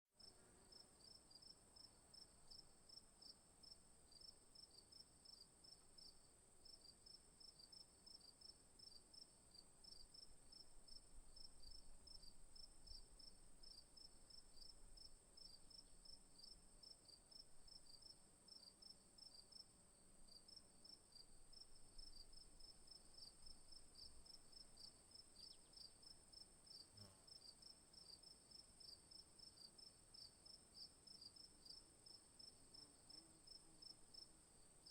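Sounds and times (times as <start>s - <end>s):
rapid insect chirps: 20.3s - 34.9s.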